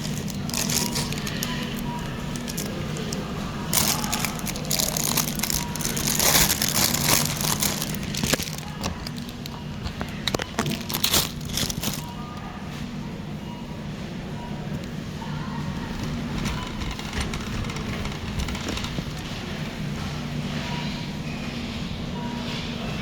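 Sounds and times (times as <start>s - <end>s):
crinkling and crackling: 0.0s - 12.5s, 15.7s - 19.6s
steady low hum: 0.0s - 23.0s.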